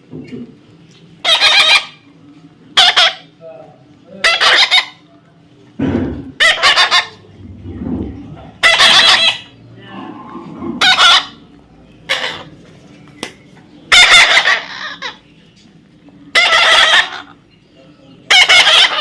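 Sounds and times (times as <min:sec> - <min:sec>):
parrot screeching: 0:01.2 - 0:02.0, 0:02.8 - 0:03.3, 0:04.2 - 0:05.0, 0:06.4 - 0:07.2, 0:08.6 - 0:09.6, 0:10.8 - 0:11.4, 0:12.1 - 0:12.5, 0:13.9 - 0:15.2, 0:16.3 - 0:17.4, 0:18.3 - 0:19.0.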